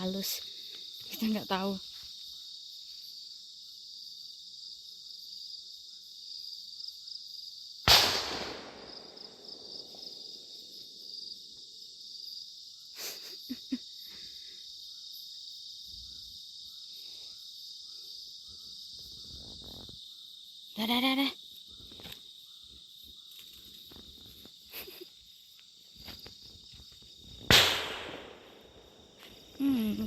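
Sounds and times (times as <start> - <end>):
crickets and insects chirping: 0.0 - 30.0
firecracker bang with echo: 7.9 - 9.2, 27.5 - 28.8.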